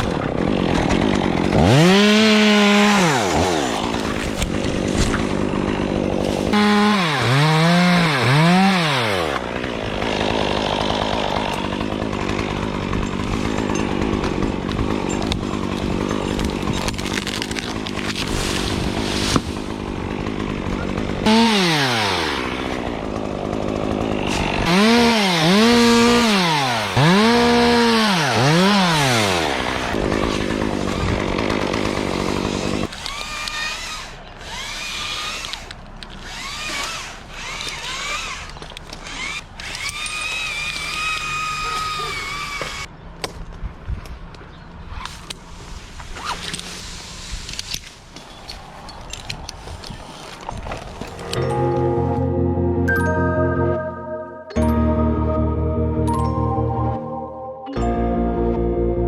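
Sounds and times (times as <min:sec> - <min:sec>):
chainsaw engine revving: 0:00.0 - 0:42.9.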